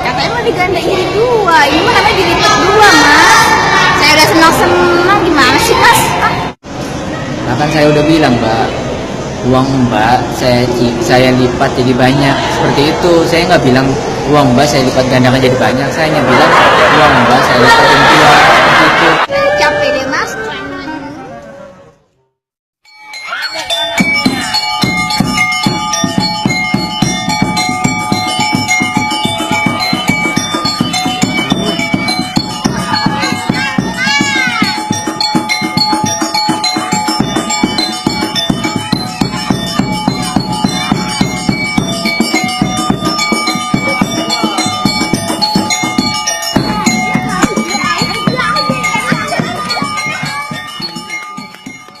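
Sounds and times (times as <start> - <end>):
music with steady beat: 23.6 - 52.0.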